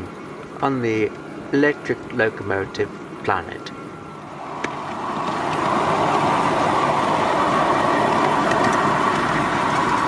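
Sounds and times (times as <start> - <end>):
wheels rolling on rails: 4.3 - 10.0.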